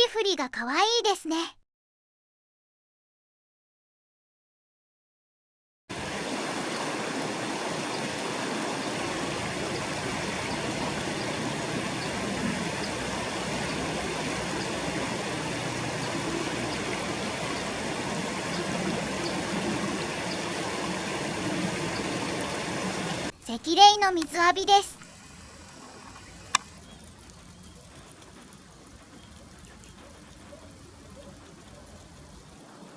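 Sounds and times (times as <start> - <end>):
river water rushing: 5.9 - 23.3.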